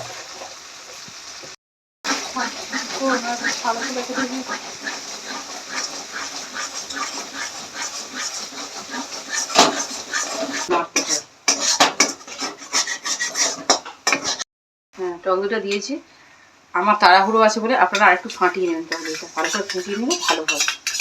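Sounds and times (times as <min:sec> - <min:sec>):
spice paste frying in oil: 0:00.0 - 0:14.4, 0:16.9 - 0:21.0
spatula scraping a pan: 0:02.1 - 0:14.5, 0:17.2 - 0:21.0.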